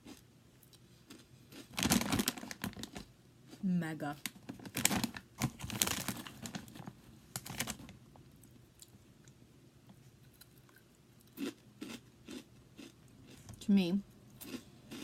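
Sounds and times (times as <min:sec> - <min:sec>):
person chewing crunchy snack: 0:00.0 - 0:03.6, 0:10.3 - 0:13.5, 0:14.4 - 0:15.0.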